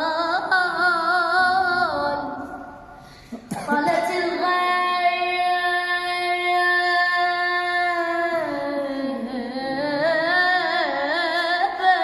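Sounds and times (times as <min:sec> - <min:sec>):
person singing a religious lament: 0:03.6 - 0:12.0.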